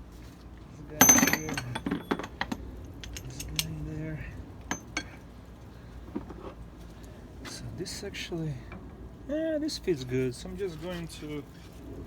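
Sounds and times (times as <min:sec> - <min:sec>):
metal parts clinking and knocking: 0:01.0 - 0:03.9, 0:04.7 - 0:05.2.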